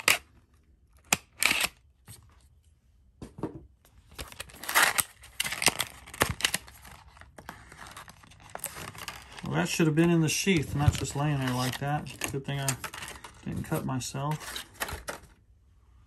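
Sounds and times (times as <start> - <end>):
packaging crinkling and rustling: 4.0 - 15.4.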